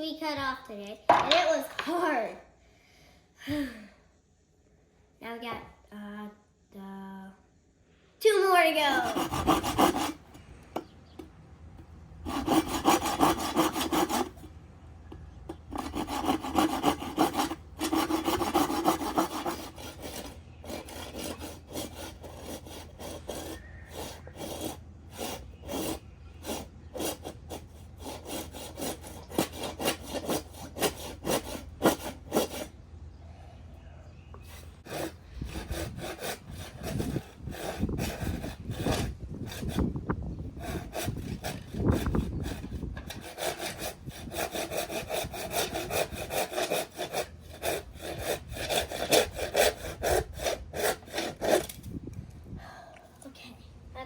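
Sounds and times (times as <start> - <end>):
hand saw cutting wood: 8.8 - 10.4, 12.2 - 14.5, 15.5 - 32.8, 34.4 - 40.0, 40.6 - 52.0.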